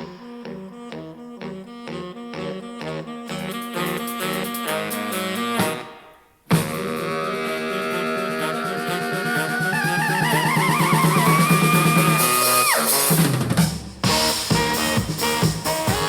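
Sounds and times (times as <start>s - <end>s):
rock music through speakers: 14.0s - 16.0s.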